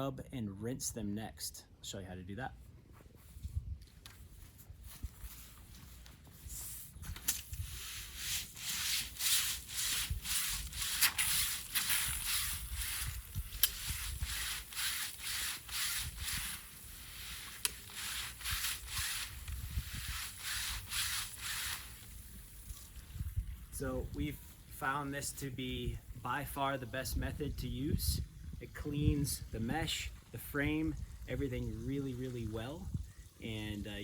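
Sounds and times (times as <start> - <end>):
brushes scrubbing wet screen: 4.2 - 23.1.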